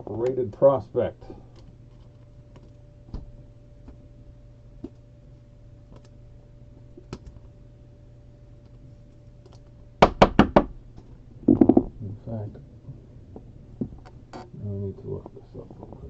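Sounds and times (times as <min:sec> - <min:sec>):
low steady hum: 0:00.0 - 0:16.0
faint clicks and taps: 0:01.3 - 0:04.0, 0:04.8 - 0:05.1, 0:05.9 - 0:06.2, 0:06.8 - 0:07.5.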